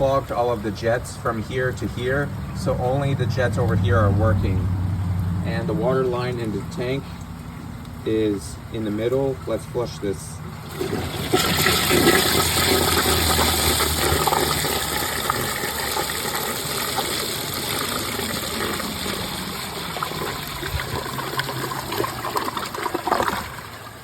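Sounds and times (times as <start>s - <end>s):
water gurgling and splashing: 0.0s - 24.0s
toilet flushing: 10.4s - 24.0s.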